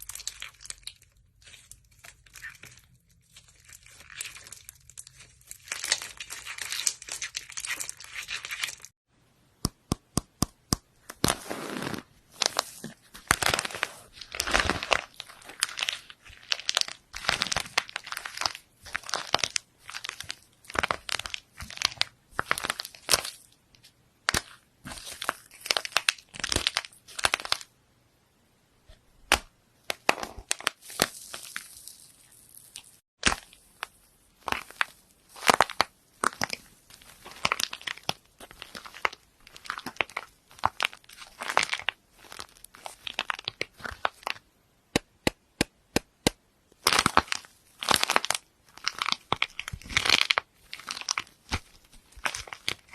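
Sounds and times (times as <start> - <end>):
slime crackling and popping: 11.1 - 23.5, 24.2 - 27.7, 29.3 - 52.9.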